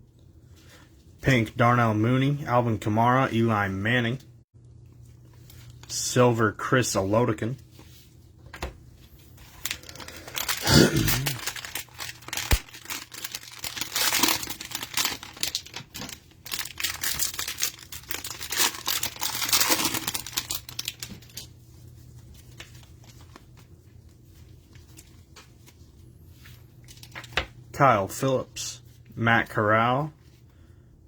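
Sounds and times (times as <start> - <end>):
cellophane wrapper tearing and crinkling: 9.5 - 21.5.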